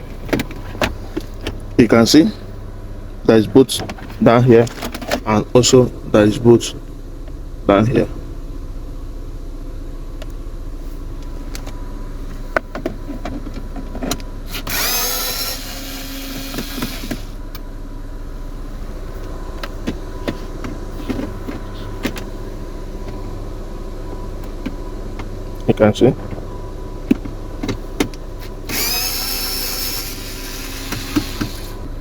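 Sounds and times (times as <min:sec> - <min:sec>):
steady low hum: 0:00.0 - 0:32.0
power screwdriver whirring: 0:14.5 - 0:17.4, 0:28.6 - 0:31.8.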